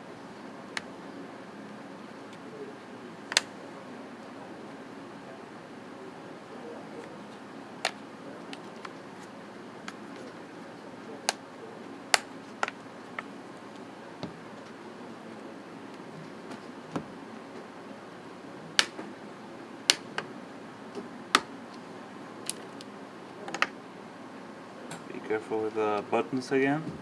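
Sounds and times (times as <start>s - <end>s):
plastic clips snapping loose: 22.5s - 22.9s.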